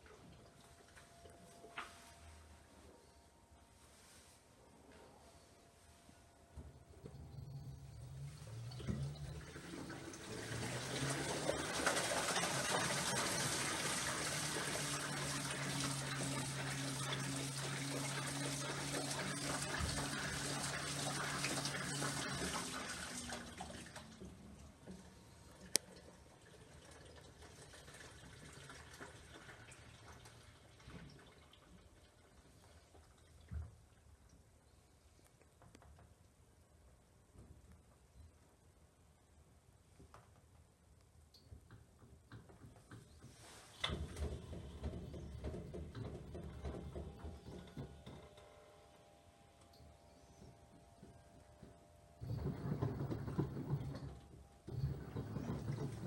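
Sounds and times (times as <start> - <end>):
low hum: 4.6 - 11.6
washing machine filling with water: 6.9 - 34.1, 42.9 - 49.0, 49.8 - 56.0.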